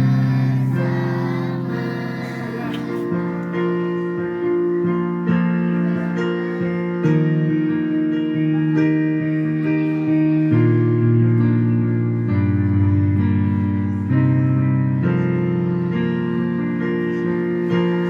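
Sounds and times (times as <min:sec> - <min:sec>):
keyboard chords and melody: 0:00.0 - 0:18.0.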